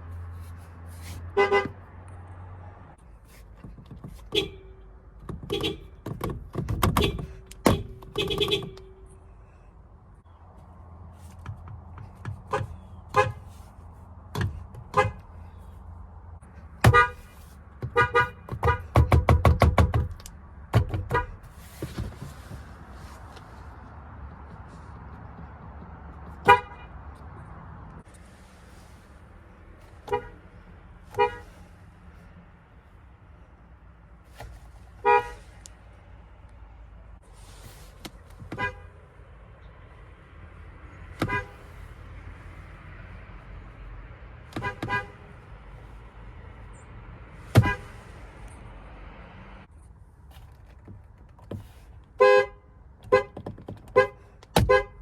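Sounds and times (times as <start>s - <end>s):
car horn toots: 1.3s - 1.8s, 4.2s - 6.0s, 6.8s - 9.2s, 12.4s - 13.5s, 14.8s - 15.3s, 16.8s - 19.1s, 21.0s - 21.4s, 26.3s - 27.1s, 30.0s - 30.4s, 31.1s - 31.5s, 35.0s - 35.5s, 38.5s - 39.0s, 41.2s - 41.6s, 44.5s - 45.4s, 47.5s - 48.0s, 52.2s - 55.0s.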